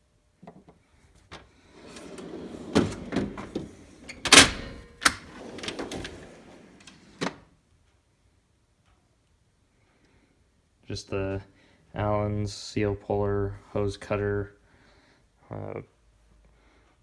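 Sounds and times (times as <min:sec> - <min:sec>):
drawer clunks: 0:01.3 - 0:07.4
metal drawers sliding: 0:01.3 - 0:07.4.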